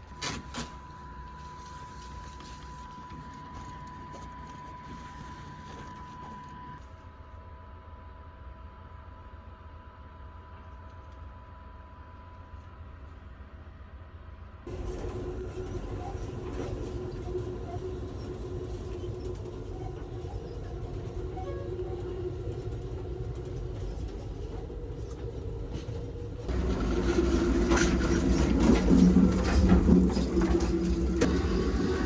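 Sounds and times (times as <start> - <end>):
train rumbling inside car: 12.1 - 32.0
rattling: 26.5 - 32.0.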